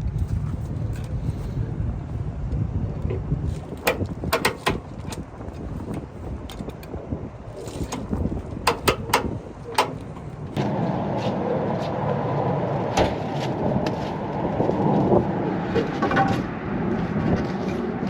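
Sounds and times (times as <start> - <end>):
vehicle running noise: 0.0 - 18.0
sharp metallic clanks: 7.9 - 10.4.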